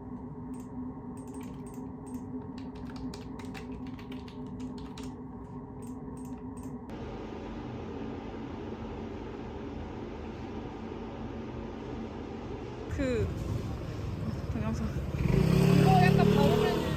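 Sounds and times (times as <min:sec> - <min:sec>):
steady low hum: 0:00.0 - 0:16.9
keyboard typing clicks: 0:00.6 - 0:05.2, 0:05.8 - 0:06.8.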